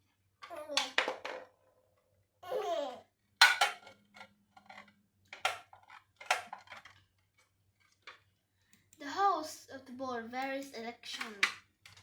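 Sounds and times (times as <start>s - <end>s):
hard objects clattering: 3.4s - 8.3s.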